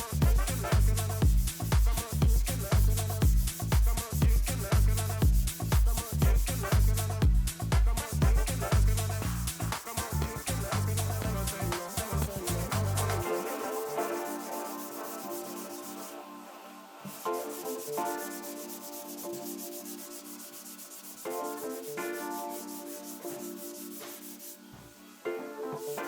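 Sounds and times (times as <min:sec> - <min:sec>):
hand sanding strokes: 0:00.0 - 0:25.2
background music with sustained chords: 0:12.6 - 0:26.0.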